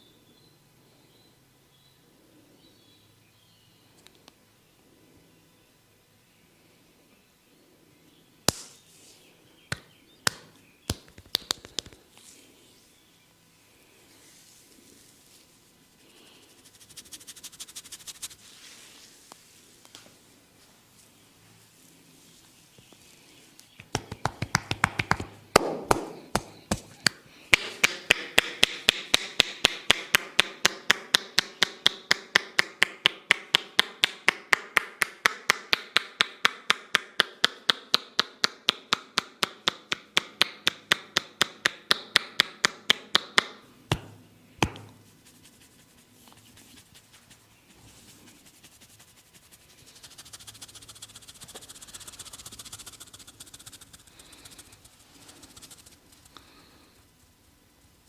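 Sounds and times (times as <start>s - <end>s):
hands striking a head rhythmically: 8.5s - 8.7s, 9.7s - 12.0s, 23.8s - 45.0s, 50.0s - 56.0s.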